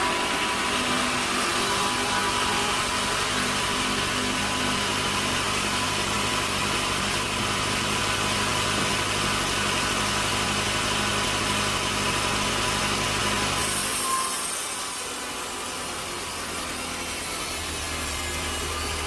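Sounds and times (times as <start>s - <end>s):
sawmill machinery droning: 0.0s - 19.0s.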